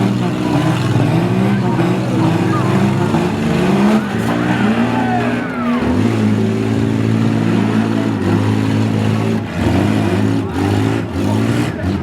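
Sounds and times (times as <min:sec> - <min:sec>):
car engines revving: 0:00.0 - 0:12.0.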